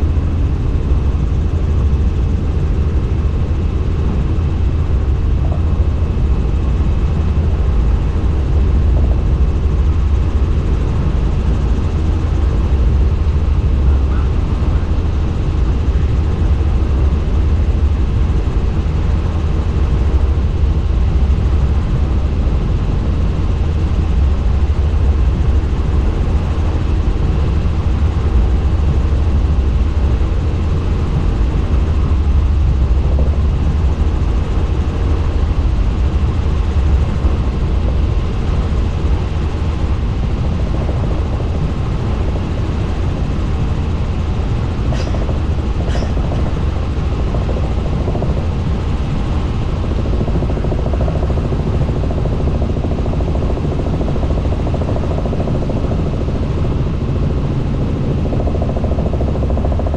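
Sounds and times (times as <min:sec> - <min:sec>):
helicopter rotor and engine drone: 0:00.0 - 0:59.9.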